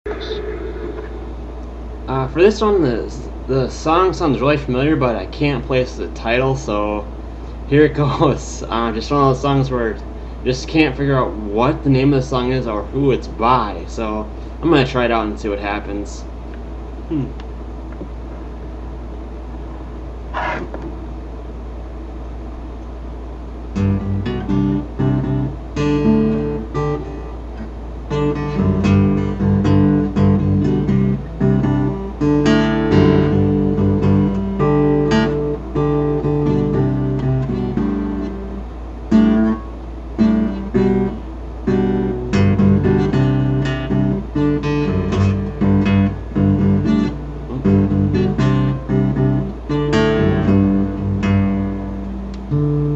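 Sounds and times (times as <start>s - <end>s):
low steady hum: 0.1s - 52.9s
acoustic guitar chords: 23.7s - 52.9s.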